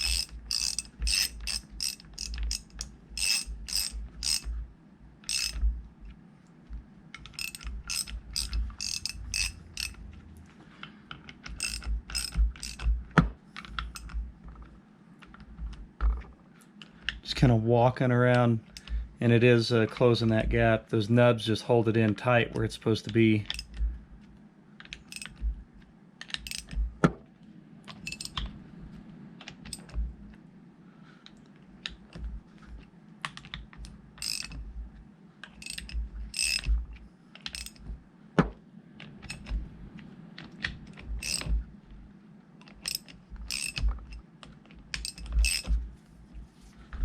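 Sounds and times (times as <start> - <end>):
ratchet wrench clicking: 0.0 - 4.5, 5.2 - 5.6, 7.3 - 10.0, 11.5 - 13.0, 13.9 - 14.2, 23.5 - 23.8, 25.1 - 25.4, 26.4 - 26.8, 28.0 - 28.4, 34.2 - 34.6, 35.6 - 36.7, 37.5 - 37.8, 41.2 - 41.5, 42.8 - 44.2, 45.0 - 45.7.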